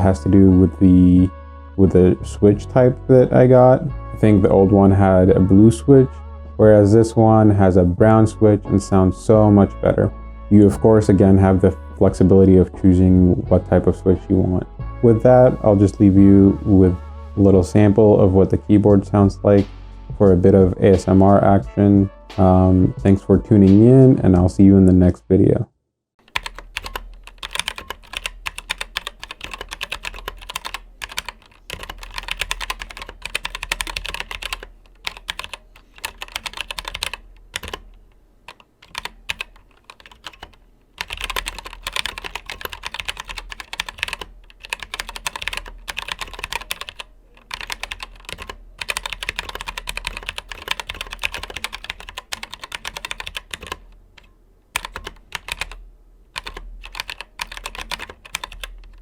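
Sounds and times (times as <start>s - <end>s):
mechanical keyboard key clicks: 26.3s - 55.8s, 56.4s - 59.0s.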